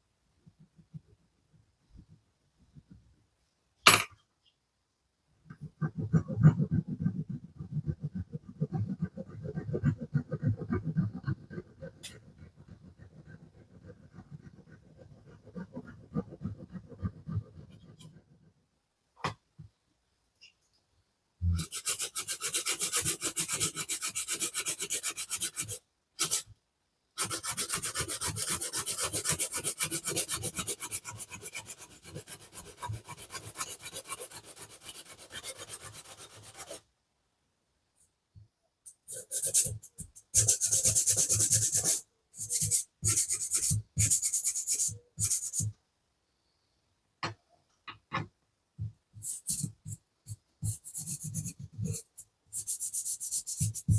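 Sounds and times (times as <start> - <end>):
rasping rubbing on metal: 39.1 - 45.7.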